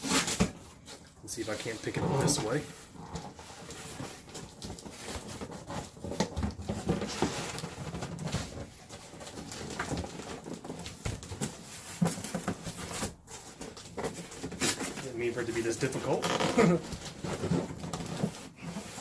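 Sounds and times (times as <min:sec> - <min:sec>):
cardboard boxes scraping and knocking: 0:00.0 - 0:19.0.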